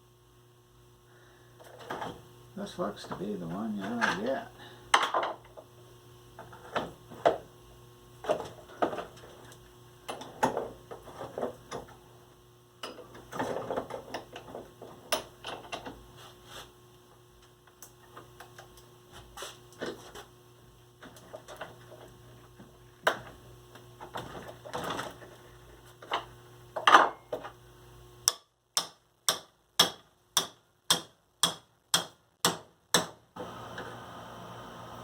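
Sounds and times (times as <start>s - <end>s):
tool clicks and taps on metal: 28.2s - 32.1s.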